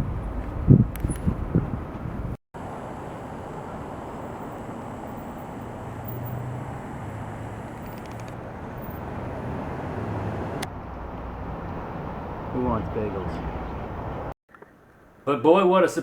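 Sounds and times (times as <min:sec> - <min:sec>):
low vehicle-like rumble: 0:00.0 - 0:14.4
sharp click: 0:00.9 - 0:01.3, 0:07.7 - 0:08.4.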